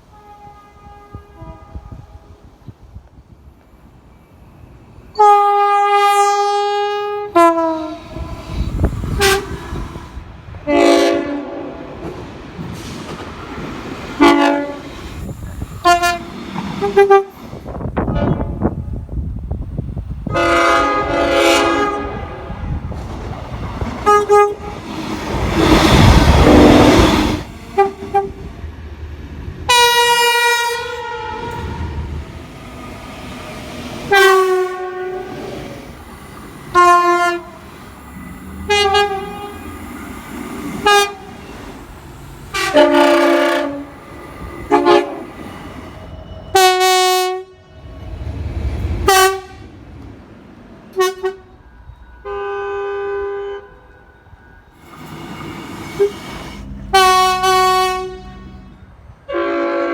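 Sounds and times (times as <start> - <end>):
train air horn blasts: 0.0 - 2.5, 5.1 - 12.0, 14.2 - 17.4, 18.0 - 18.9, 20.2 - 22.9, 24.0 - 28.5, 29.7 - 47.7, 49.0 - 49.8, 51.0 - 51.6, 52.2 - 59.9
loud rushing noise: 54.8 - 59.2.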